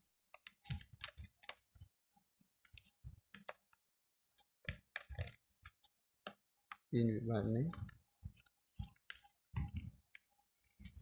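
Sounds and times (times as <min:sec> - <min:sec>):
paper crackling and rustling: 0:00.1 - 0:01.9, 0:04.4 - 0:06.0, 0:08.2 - 0:11.0.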